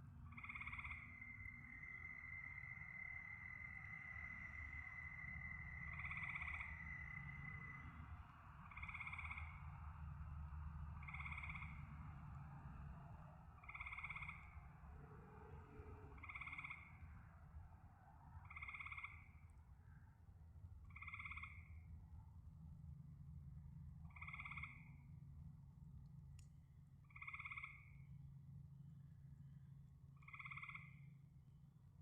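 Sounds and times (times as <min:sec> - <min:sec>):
frog croaking: 0:00.3 - 0:10.0, 0:11.0 - 0:11.8, 0:13.6 - 0:14.6, 0:16.2 - 0:17.0, 0:18.4 - 0:19.4, 0:20.9 - 0:21.7, 0:24.1 - 0:25.0, 0:27.1 - 0:28.0, 0:30.2 - 0:31.0.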